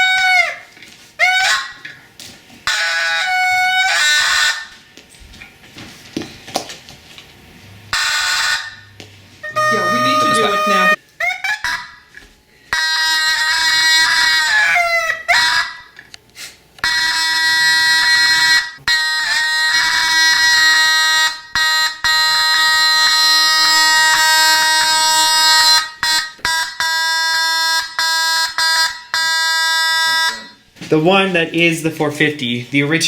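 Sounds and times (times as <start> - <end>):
fire alarm horn buzzing: 2.6 - 4.8, 7.8 - 12.1, 12.7 - 16.0, 16.8 - 30.7.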